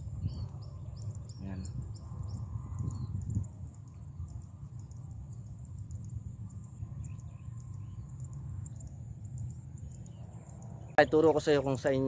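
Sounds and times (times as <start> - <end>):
insects droning: 0.0 - 12.0
bird calls: 0.1 - 5.0.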